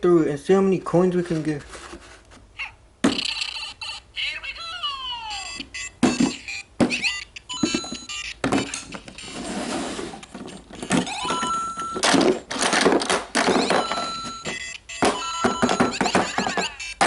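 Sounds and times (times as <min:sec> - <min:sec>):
electronic beeps from toy speaker: 0:05.2 - 0:08.8, 0:11.0 - 0:12.0, 0:13.4 - 0:17.0
plastic knocks and clacks: 0:10.3 - 0:16.7.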